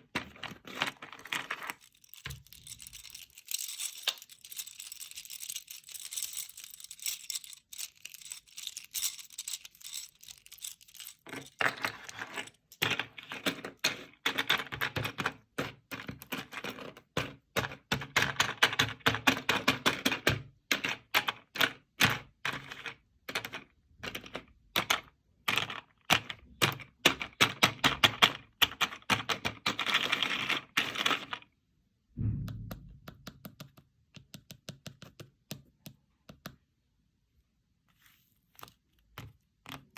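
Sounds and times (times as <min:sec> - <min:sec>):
short low thump: 0:32.2 - 0:33.1.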